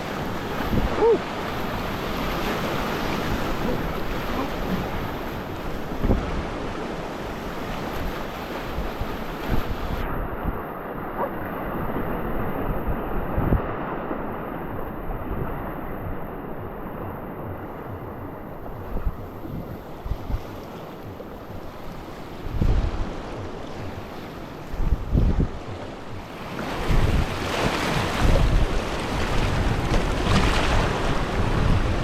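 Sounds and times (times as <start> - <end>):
river rapids rushing: 0.0 - 6.0
wind buffeting microphone: 0.0 - 32.0.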